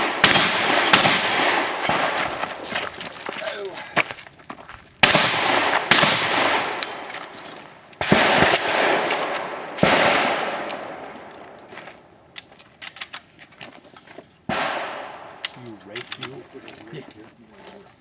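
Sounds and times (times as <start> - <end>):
shotgun shots echoing: 0.0 - 2.6, 5.0 - 7.4, 8.0 - 11.6, 14.5 - 15.7.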